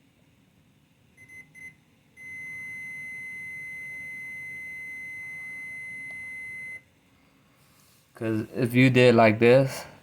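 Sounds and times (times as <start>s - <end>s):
multimeter beeping: 1.2s - 6.9s.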